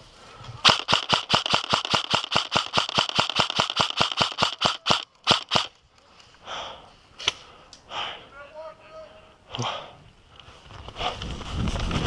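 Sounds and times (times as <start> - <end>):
airsoft gun firing single shots: 0.6 - 5.7.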